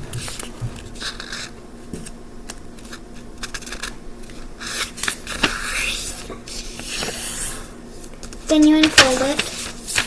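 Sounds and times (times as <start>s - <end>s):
paper being folded and creased: 2.9s - 10.0s.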